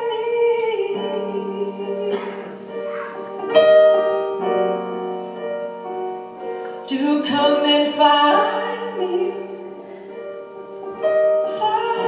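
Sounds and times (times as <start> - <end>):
piano chords: 0.0 - 12.0.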